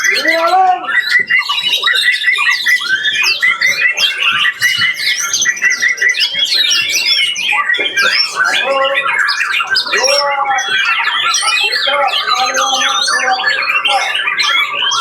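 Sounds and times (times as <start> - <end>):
lower bird calls: 0.0 - 15.0
songbirds singing: 0.0 - 15.0
fast repeated bird note: 7.8 - 15.0.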